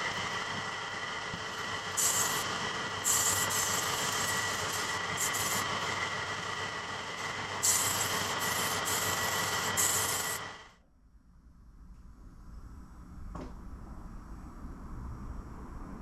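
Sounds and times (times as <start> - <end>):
power tool whining: 0.0 - 10.6.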